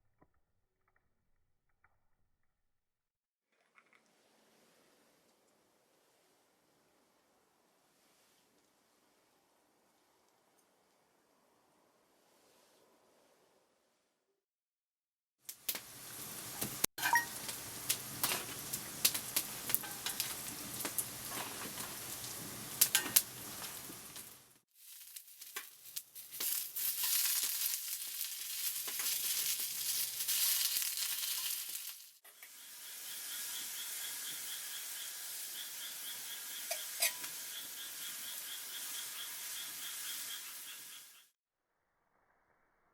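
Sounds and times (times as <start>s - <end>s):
sharp crackling pops: 15.4s - 32.2s
food sizzling in a pan: 15.5s - 41.2s.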